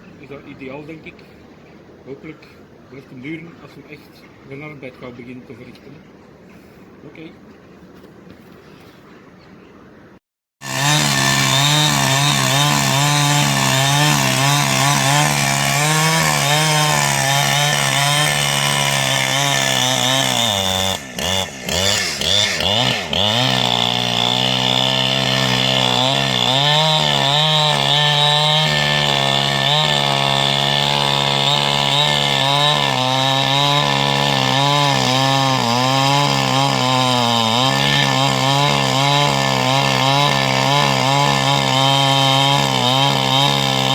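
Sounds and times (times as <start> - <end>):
chainsaw running at high speed: 10.6 - 43.9.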